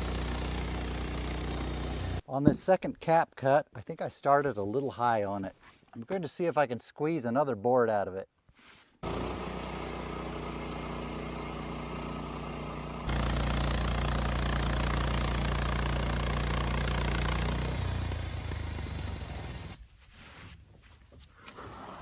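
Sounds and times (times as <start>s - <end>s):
band sawmill running: 0.0s - 2.2s, 9.0s - 19.8s.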